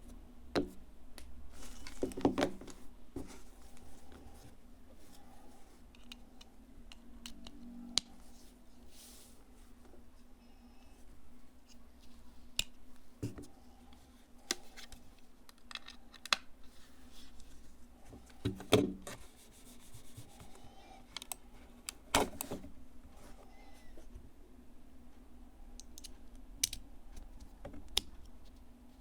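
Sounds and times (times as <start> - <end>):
small objects handled on a desk: 1.5 - 6.3.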